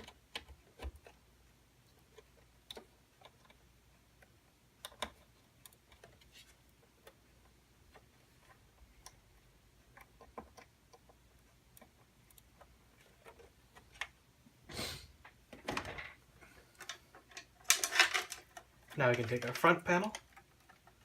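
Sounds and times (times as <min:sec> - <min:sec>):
computer parts being handled: 0:15.3 - 0:21.0.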